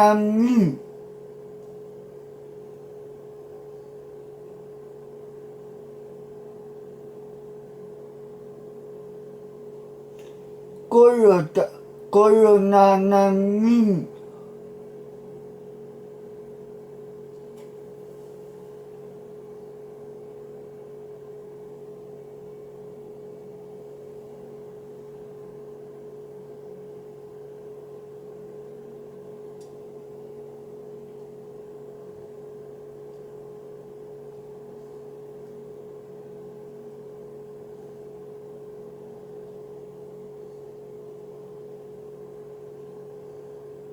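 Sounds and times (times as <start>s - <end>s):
steady hum: 0.0s - 1.0s, 10.8s - 14.6s.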